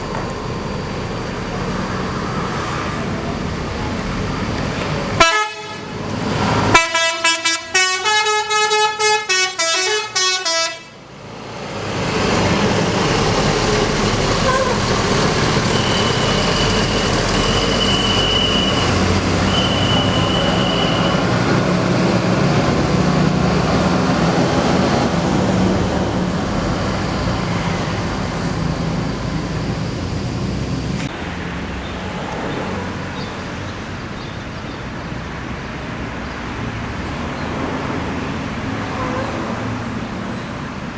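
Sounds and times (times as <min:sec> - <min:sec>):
bus engine running: 0:00.0 - 0:40.9
bus horn playing tune: 0:05.2 - 0:06.0, 0:06.7 - 0:11.0, 0:14.4 - 0:14.9.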